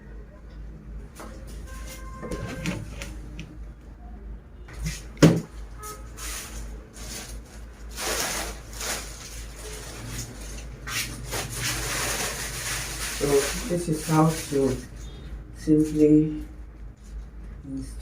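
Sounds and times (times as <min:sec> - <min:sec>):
rustling and scraping: 0:01.1 - 0:03.4, 0:06.1 - 0:17.6.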